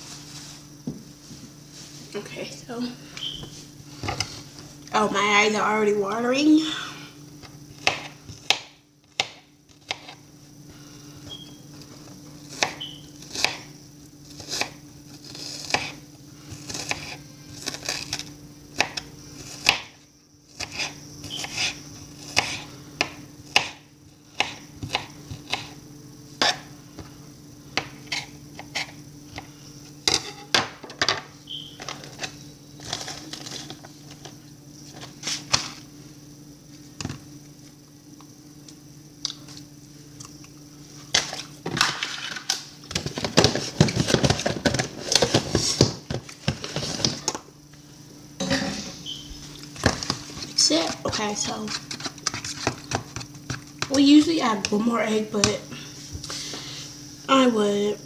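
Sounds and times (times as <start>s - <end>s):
knife chopping on cutting board: 15.6s - 15.9s, 24.4s - 25.7s.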